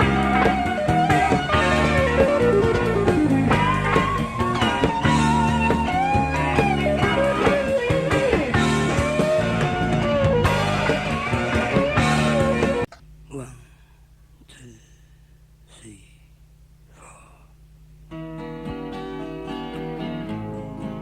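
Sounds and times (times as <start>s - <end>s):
electric guitar solo: 0.0s - 12.9s
rock band playing: 0.0s - 12.9s.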